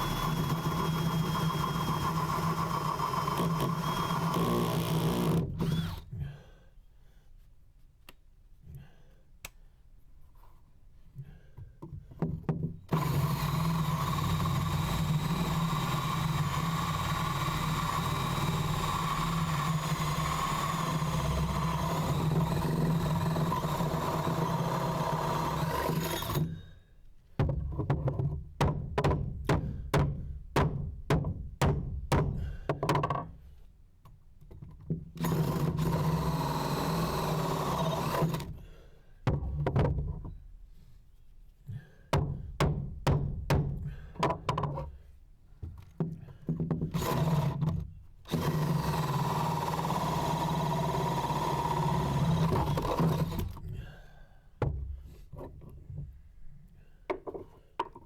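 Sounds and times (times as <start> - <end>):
power drill running: 0.0 - 6.1, 12.9 - 26.6, 35.2 - 38.5, 47.0 - 47.7, 48.3 - 53.6.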